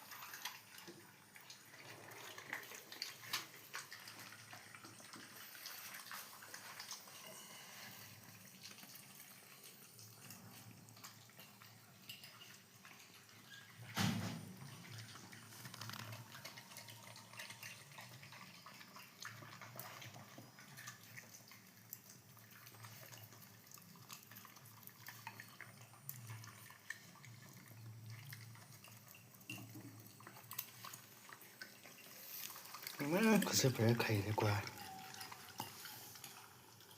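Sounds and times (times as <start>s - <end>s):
dogs chewing wetly: 0.0s - 36.9s
thump: 13.9s - 14.5s.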